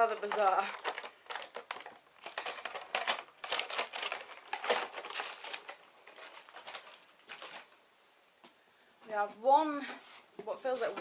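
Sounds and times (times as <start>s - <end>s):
packaging crinkling: 0.0s - 7.8s.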